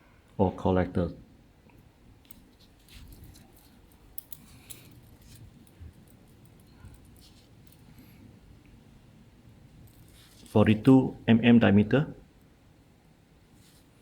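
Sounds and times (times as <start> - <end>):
metallic clicks and ticks: 3.1 - 7.8.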